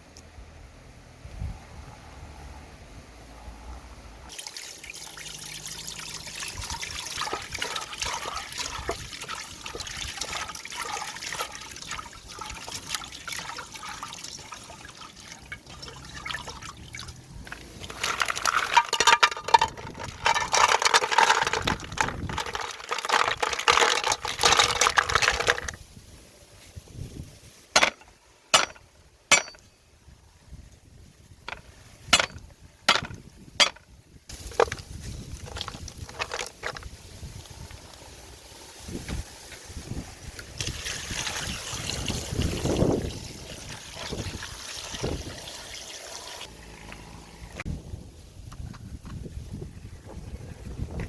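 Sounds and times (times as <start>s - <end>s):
water splashing and trickling: 4.3s - 26.1s, 34.3s - 47.8s.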